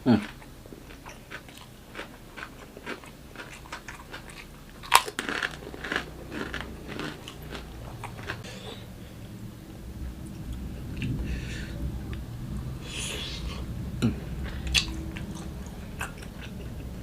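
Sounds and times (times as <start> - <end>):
chewing crunchy food: 0.0 - 8.9, 14.4 - 16.9.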